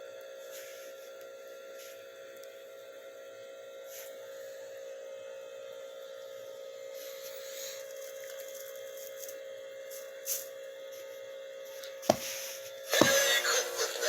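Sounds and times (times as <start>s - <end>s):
steady electrical hum from speaker: 0.0s - 14.0s.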